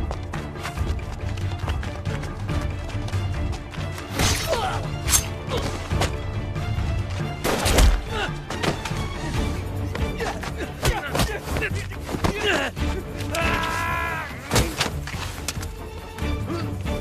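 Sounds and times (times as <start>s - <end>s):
film score music: 0.0s - 17.0s.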